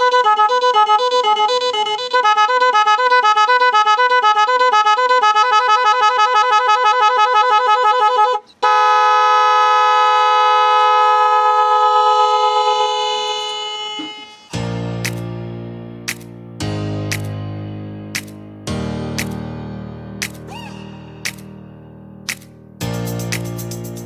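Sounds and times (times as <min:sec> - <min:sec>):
electric horn two-tone warble: 0:00.0 - 0:14.5.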